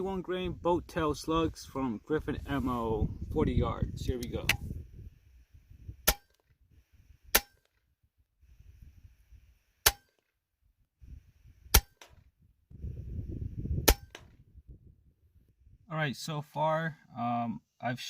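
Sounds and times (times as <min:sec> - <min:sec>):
air rifle shots: 0:06.0 - 0:06.4, 0:07.3 - 0:07.8, 0:11.7 - 0:12.2, 0:13.8 - 0:14.4.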